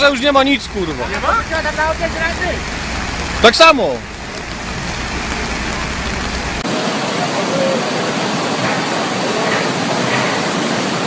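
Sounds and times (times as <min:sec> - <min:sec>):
rushing floodwater: 0:00.0 - 0:11.0
faint voices: 0:06.7 - 0:11.0.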